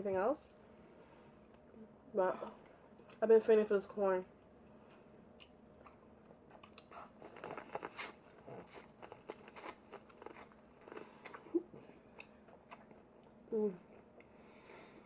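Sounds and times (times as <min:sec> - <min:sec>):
person chewing and biting: 0:05.4 - 0:13.4.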